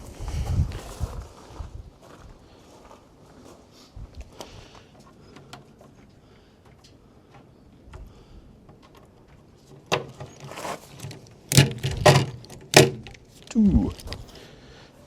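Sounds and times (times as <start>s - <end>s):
pop riveter metallic clacks: 11.0s - 13.2s.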